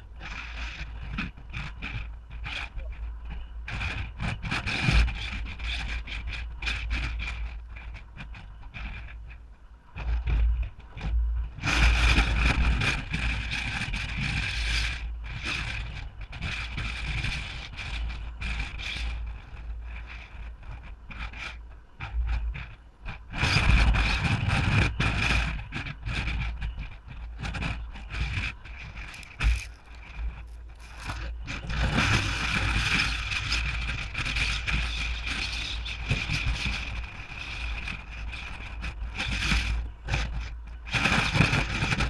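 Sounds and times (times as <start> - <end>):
wind buffeting microphone: 0.0 - 42.0
rustling handling noise: 29.0 - 32.1.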